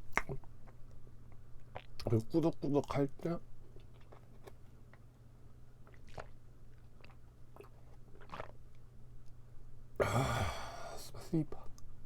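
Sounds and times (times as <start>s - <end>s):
soft wet smacks and clicks: 0.0s - 5.1s
chewing mouth sounds: 0.1s - 2.2s, 3.8s - 5.0s, 5.8s - 8.8s.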